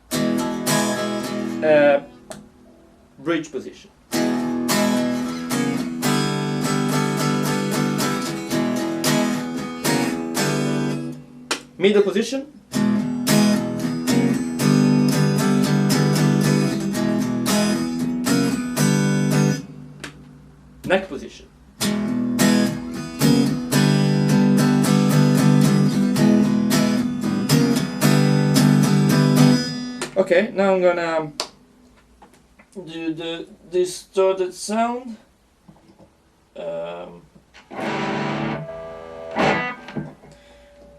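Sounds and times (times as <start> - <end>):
clean electric guitar strumming chords: 4.1 - 11.8, 12.6 - 21.0, 21.8 - 30.3, 37.7 - 40.9.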